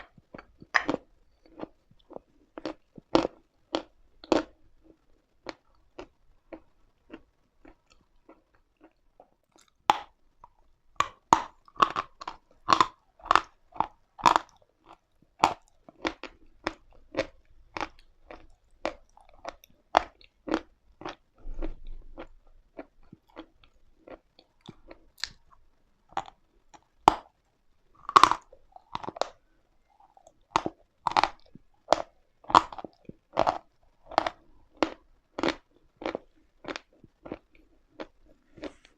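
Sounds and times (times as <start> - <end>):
chewing chalk crunches: 0.0 - 27.3, 28.0 - 38.9.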